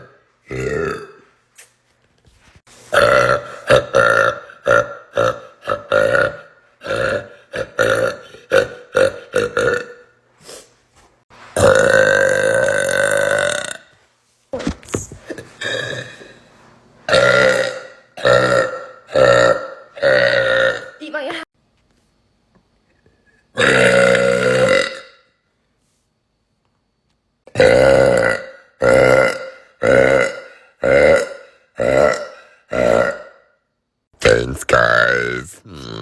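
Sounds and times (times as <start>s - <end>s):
person burping: 0.0s - 1.3s, 2.9s - 10.1s, 11.6s - 13.9s, 15.3s - 16.3s, 17.1s - 21.0s, 23.6s - 25.2s, 27.5s - 33.5s, 34.2s - 36.0s.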